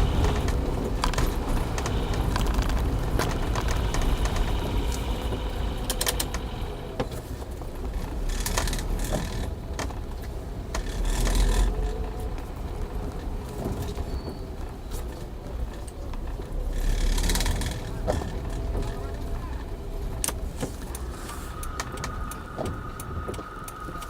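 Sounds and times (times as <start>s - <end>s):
car engine and road rumble: 0.0s - 24.0s
faint wavering whine: 20.8s - 24.0s.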